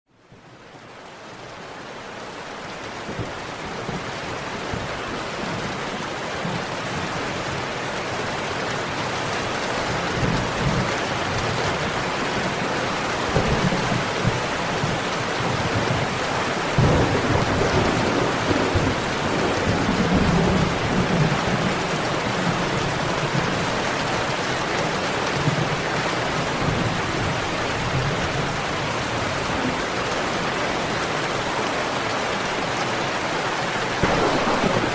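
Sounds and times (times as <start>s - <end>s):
heavy rain falling: 0.2s - 34.9s
thunder rumbling: 13.2s - 23.6s, 34.0s - 34.9s.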